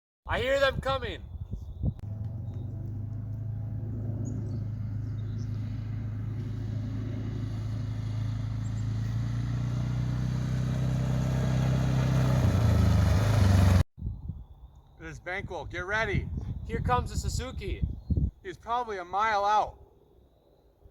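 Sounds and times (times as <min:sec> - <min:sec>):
vehicle engine running: 0:02.0 - 0:13.8.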